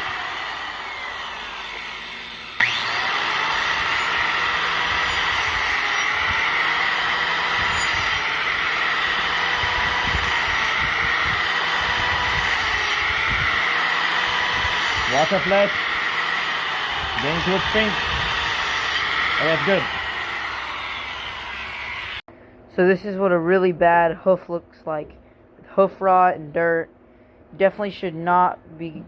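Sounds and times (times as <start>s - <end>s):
angle grinder grinding hoof: 0.0s - 22.2s.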